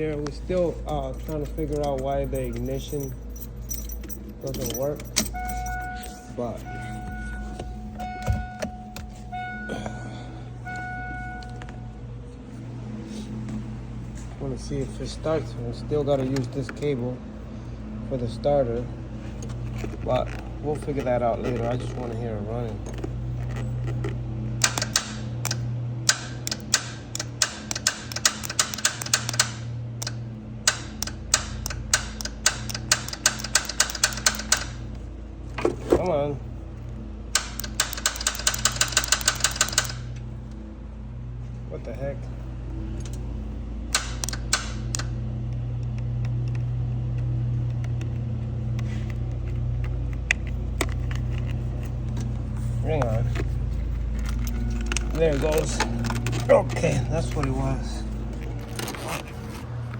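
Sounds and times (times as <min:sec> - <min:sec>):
steady low hum: 0:00.0 - 0:59.9
starter circuit clicking: 0:24.6 - 0:34.8, 0:37.3 - 0:40.1, 0:43.9 - 0:45.2.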